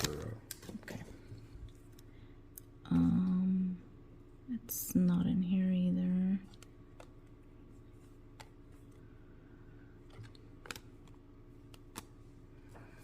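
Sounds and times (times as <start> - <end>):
low steady hum: 0.0 - 13.0
trading cards clicking: 10.1 - 12.1.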